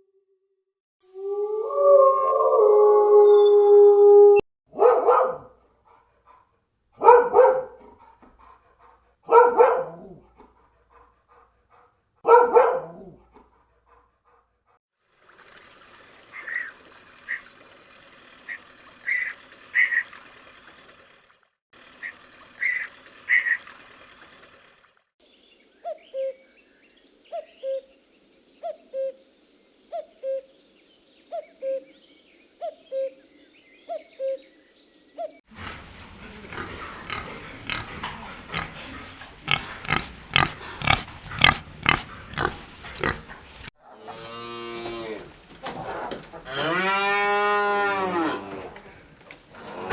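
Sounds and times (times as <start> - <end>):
rapid sharp noisy animal sounds: 35.5 - 43.7
high animal calls: 35.5 - 44.3.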